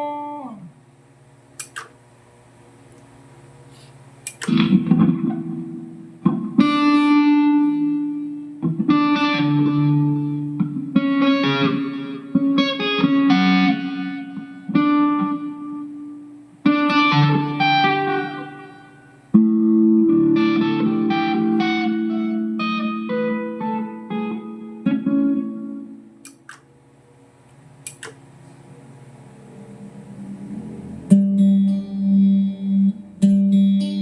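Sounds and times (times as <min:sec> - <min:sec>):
electric guitar chords and phrases: 0:04.3 - 0:26.6, 0:29.8 - 0:34.0.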